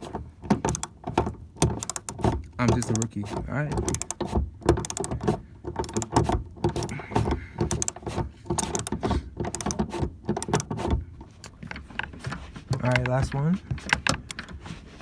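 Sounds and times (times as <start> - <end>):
metal knocking: 0.4 - 10.7
ratchet wrench clicking: 0.7 - 0.9, 1.6 - 3.2, 3.8 - 5.2, 5.8 - 7.0, 7.6 - 8.0, 8.6 - 8.9, 9.5 - 9.8, 10.4 - 10.7.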